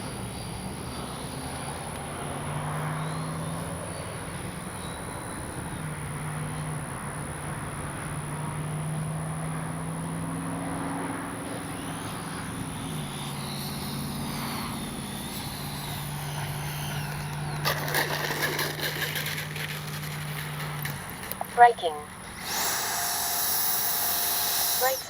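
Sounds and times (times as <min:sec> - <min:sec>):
electric jet fan drone: 0:00.0 - 0:25.0
rattling clicks: 0:17.1 - 0:21.6.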